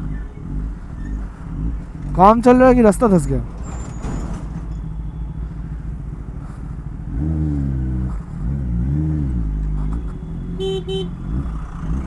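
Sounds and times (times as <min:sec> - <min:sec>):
motorcycle engine revving: 0:03.5 - 0:12.0
short horn beep: 0:10.5 - 0:11.2.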